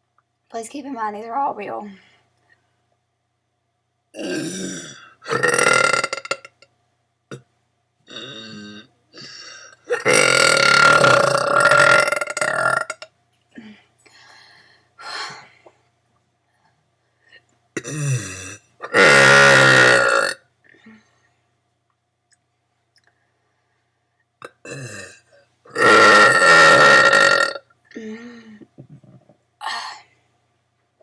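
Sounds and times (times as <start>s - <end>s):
girl burping: 4.2s - 6.5s, 8.1s - 13.0s, 17.8s - 20.4s, 24.6s - 30.0s.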